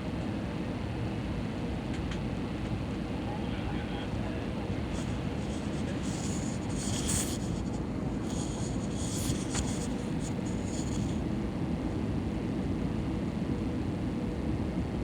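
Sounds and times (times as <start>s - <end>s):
scratchy rustling: 5.0s - 11.2s.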